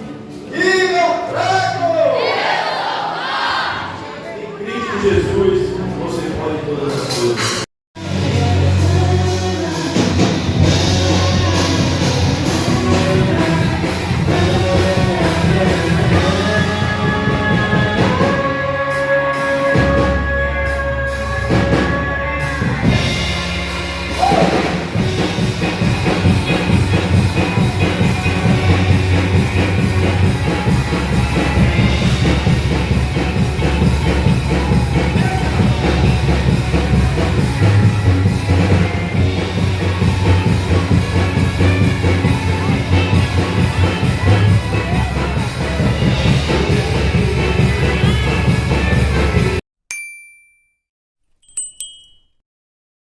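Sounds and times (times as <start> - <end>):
band music with drums and bass: 6.9 - 49.6
person singing: 8.0 - 22.9.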